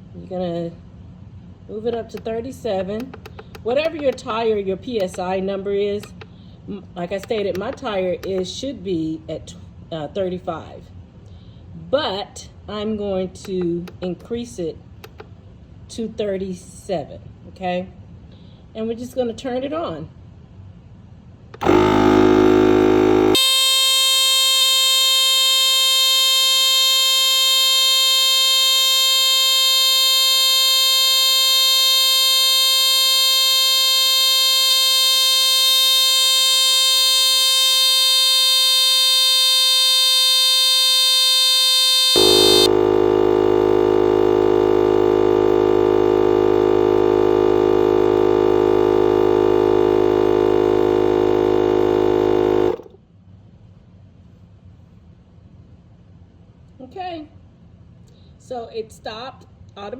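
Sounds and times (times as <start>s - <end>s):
tire inflator buzzing hum: 21.6s - 53.0s.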